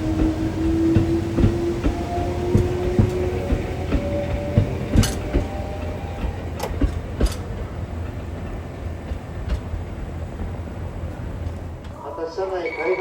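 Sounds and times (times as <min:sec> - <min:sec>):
rail car rumbling: 0:00.0 - 0:13.0
wheel clicks and clacks: 0:01.0 - 0:07.5.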